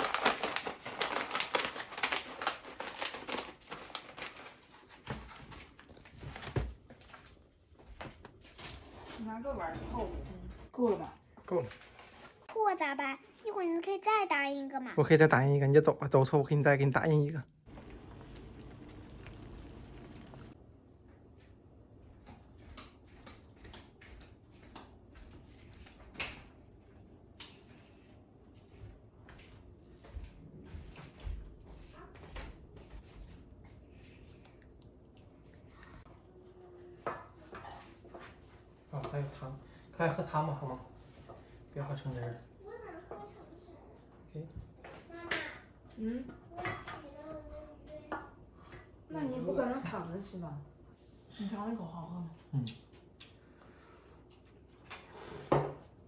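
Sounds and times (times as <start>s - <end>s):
plastic packet crinkling: 0.0s - 5.0s.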